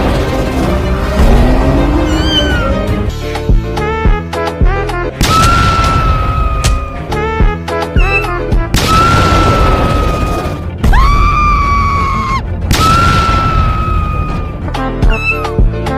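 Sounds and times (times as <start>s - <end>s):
booming hits: 8.6s - 10.9s, 12.6s - 14.7s.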